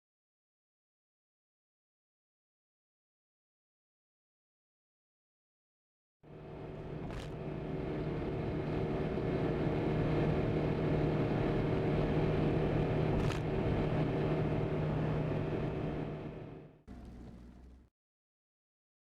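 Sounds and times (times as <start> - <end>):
car engine hum: 6.4 - 17.9.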